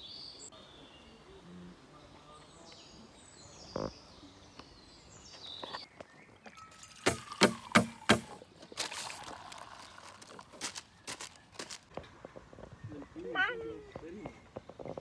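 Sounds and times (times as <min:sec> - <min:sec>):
faint outdoor background noise: 0:00.0 - 0:15.0
songbird singing: 0:00.0 - 0:15.0
knock: 0:07.1 - 0:08.4.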